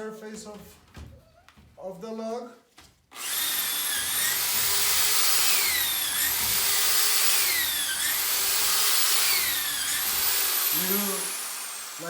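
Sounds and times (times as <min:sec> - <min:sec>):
power drill boring into log: 0:03.2 - 0:12.0.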